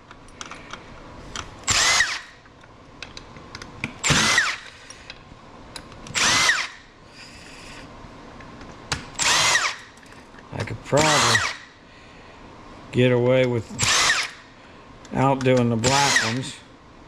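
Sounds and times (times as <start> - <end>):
cordless drill whirring: 1.7 - 2.4, 4.0 - 4.8, 6.1 - 7.4, 9.2 - 10.0, 11.0 - 11.7, 13.8 - 14.5, 15.8 - 16.5.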